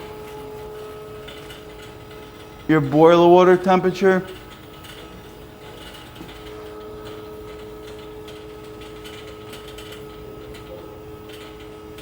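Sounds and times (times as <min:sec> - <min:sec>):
machinery humming: 0:00.0 - 0:05.4.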